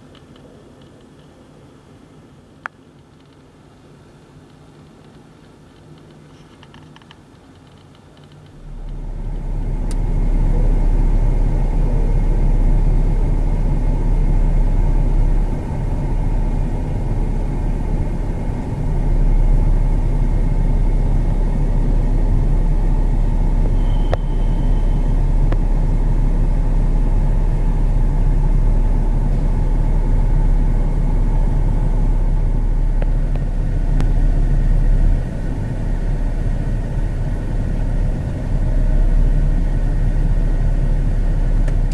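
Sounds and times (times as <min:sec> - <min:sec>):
motor vehicle rumbling: 0:08.4 - 0:41.9
short high beep: 0:23.8 - 0:25.0.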